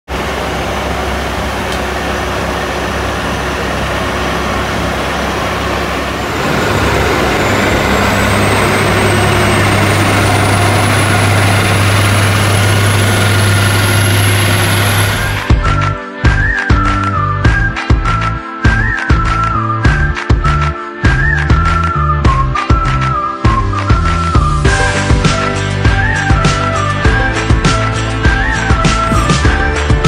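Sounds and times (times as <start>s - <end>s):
high whine rising in pitch: 0.1s - 15.6s, 29.0s - 29.7s
heavy vehicle engine drone: 0.1s - 15.9s, 24.0s - 30.0s.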